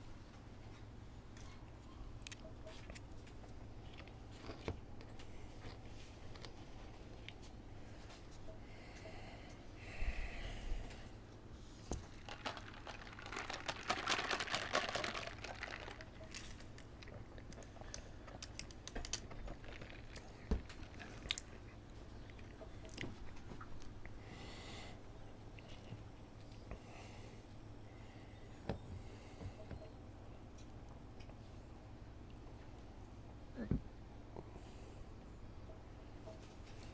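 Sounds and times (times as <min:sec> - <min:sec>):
chewing and crunching: 0:00.8 - 0:08.5, 0:12.0 - 0:24.2
soft nasal breaths: 0:07.7 - 0:11.9, 0:24.0 - 0:26.0
paper packaging crinkling: 0:11.9 - 0:21.5.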